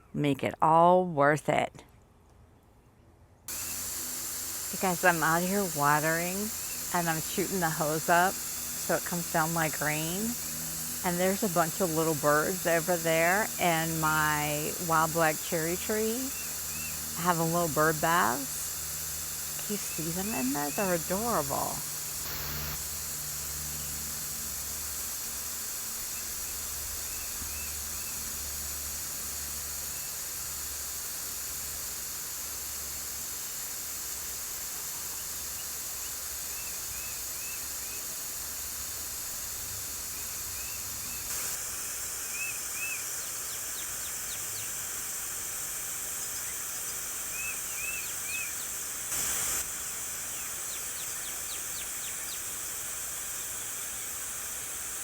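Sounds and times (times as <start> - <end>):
small birds chirping: 3.5 - 22.8, 25.9 - 28.6, 42.2 - 44.9, 46.2 - 48.9, 50.2 - 52.8
hose spray falling through leaves: 3.5 - 55.0.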